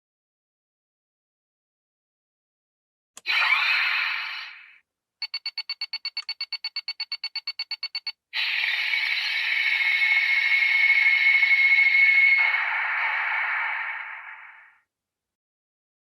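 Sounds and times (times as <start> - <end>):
rapid high beeps: 5.2 - 8.2
hissing whir with high tone: 8.4 - 14.8.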